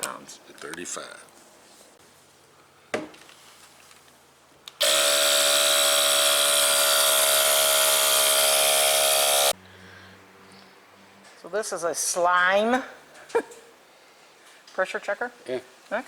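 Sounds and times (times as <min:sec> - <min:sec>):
air compressor motor running: 0:04.8 - 0:09.6.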